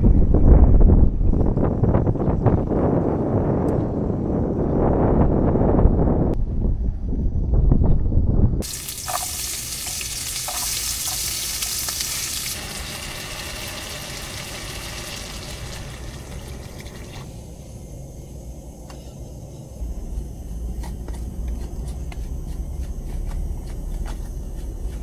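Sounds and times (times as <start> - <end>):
wind buffeting microphone: 0.0 - 17.3
food sizzling: 8.6 - 17.3.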